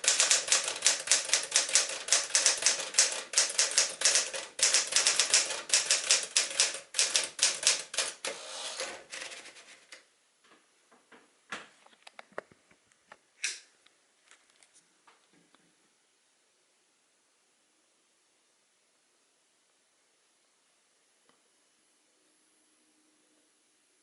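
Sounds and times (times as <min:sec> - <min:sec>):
manual typewriter typing: 0:00.0 - 0:10.0
typewriter carriage sliding: 0:08.1 - 0:09.6.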